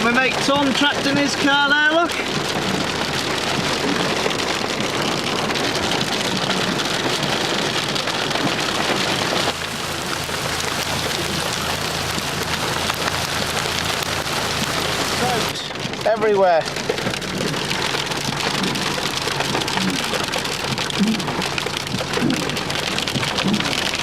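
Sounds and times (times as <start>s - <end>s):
hail rattling on a car roof: 0.0s - 24.0s
low hum: 8.9s - 15.9s.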